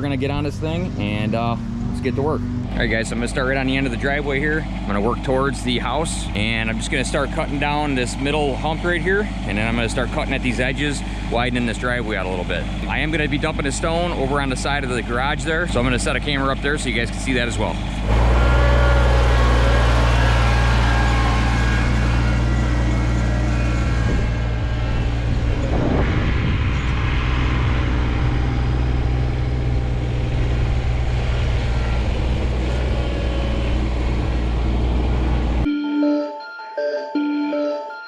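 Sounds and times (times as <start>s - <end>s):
tractor diesel engine running: 0.0s - 35.7s
music: 35.7s - 38.0s.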